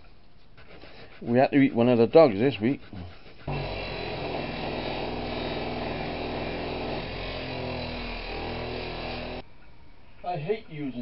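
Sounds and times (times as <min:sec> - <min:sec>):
polishing machine motor whirring: 0:03.5 - 0:09.4.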